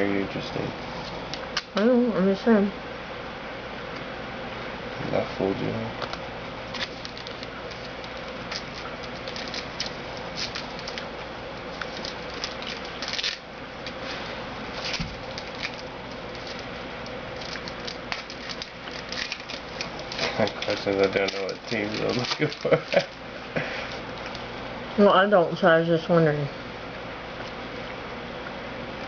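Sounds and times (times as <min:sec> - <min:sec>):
card packs crinkling and rustling: 0:06.7 - 0:23.2.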